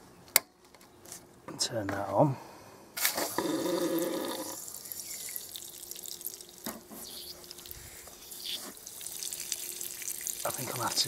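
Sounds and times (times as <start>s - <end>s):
water hissing from hose connection: 3.0s - 11.0s
water drips and splashes: 4.2s - 11.0s.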